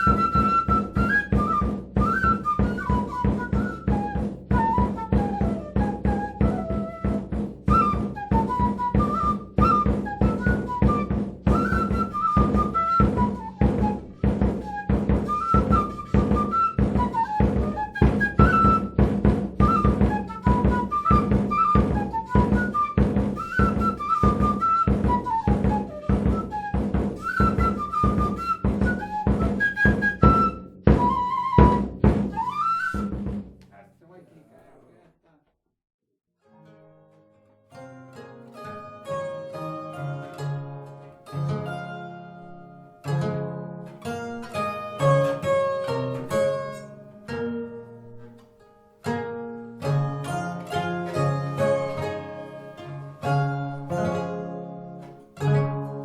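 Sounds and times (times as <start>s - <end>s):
steady drum beat: 0.0s - 33.8s.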